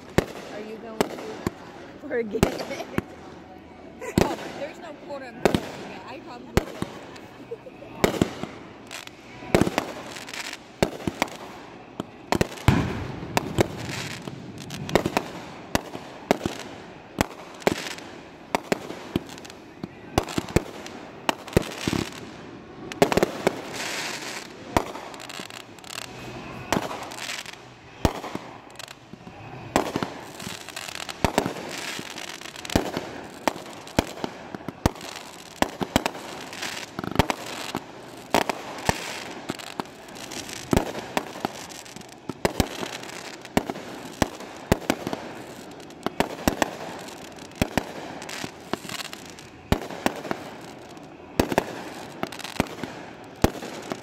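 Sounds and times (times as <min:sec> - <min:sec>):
fireworks bangs: 0:00.0 - 0:54.0
fireworks crackling: 0:00.0 - 0:54.0.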